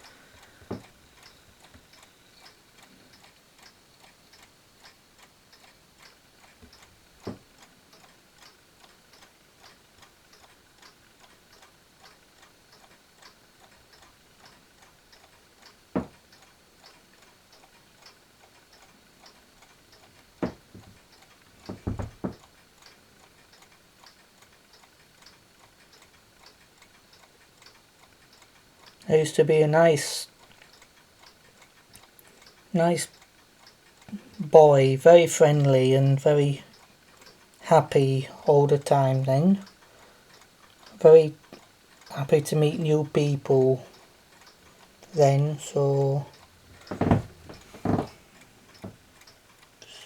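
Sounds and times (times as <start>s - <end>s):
mantel clock ticking: 0.0s - 50.0s
louder knocks: 16.0s - 16.2s, 21.7s - 22.4s.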